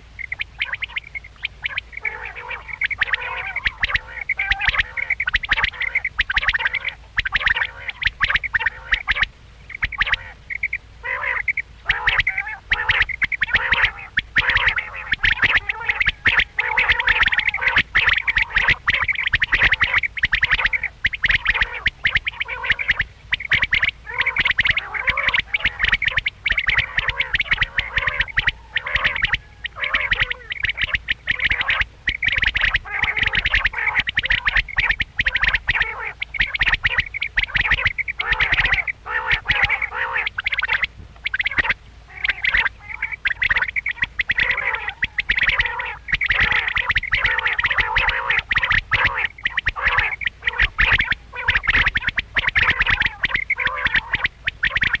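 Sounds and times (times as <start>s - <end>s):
quail calling rapidly: 0.0s - 55.0s.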